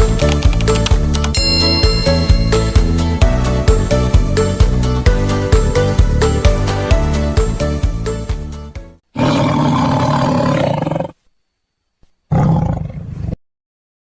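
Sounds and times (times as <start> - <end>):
background music with steady beat: 0.0 - 9.0.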